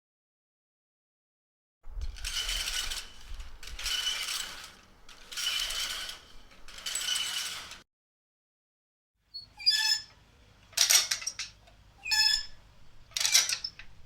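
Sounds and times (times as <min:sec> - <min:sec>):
rusty swing creaking: 0:01.9 - 0:07.8, 0:09.4 - 0:10.2, 0:10.8 - 0:14.0.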